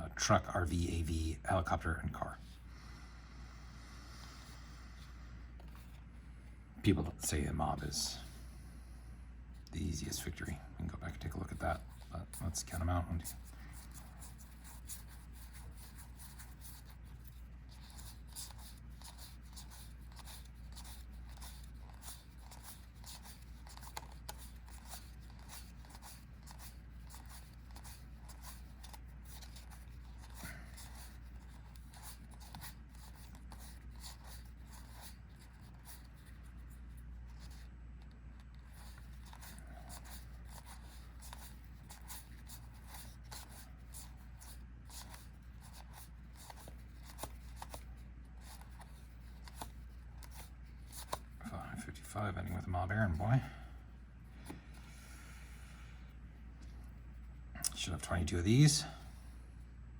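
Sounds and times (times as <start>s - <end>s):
low steady hum: 0.0s - 59.9s
trading cards being handled: 11.1s - 53.4s.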